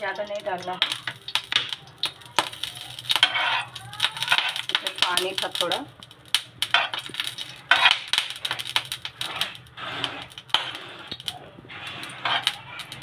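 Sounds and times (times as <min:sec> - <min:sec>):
oil crackling in a pan: 0:00.0 - 0:13.0
sharp pops of spattering water: 0:00.1 - 0:11.4.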